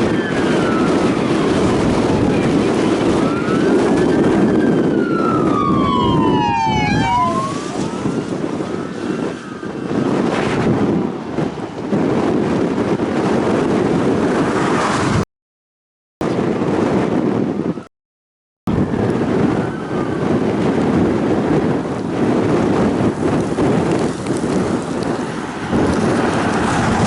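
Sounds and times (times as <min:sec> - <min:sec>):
emergency siren wailing and yelping: 0:00.0 - 0:10.3, 0:18.7 - 0:20.8
wind noise: 0:00.0 - 0:15.2, 0:16.2 - 0:17.9, 0:18.7 - 0:27.0.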